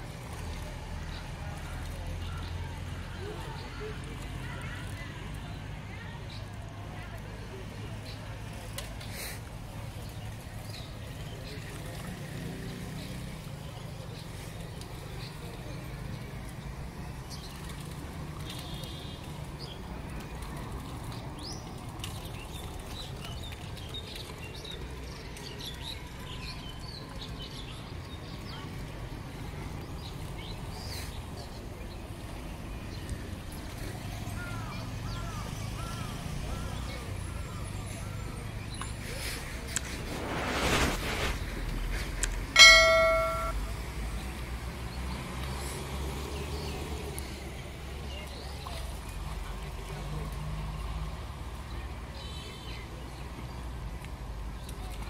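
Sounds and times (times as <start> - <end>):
short rush of noise: 39.2 - 43.6
metallic bell-like ring: 42.6 - 43.6.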